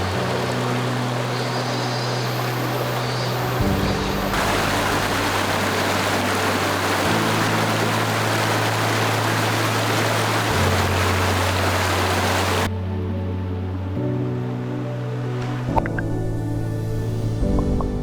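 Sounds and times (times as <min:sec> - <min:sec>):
stream rushing over rocks: 0:00.0 - 0:12.7
background music low notes: 0:00.0 - 0:18.0.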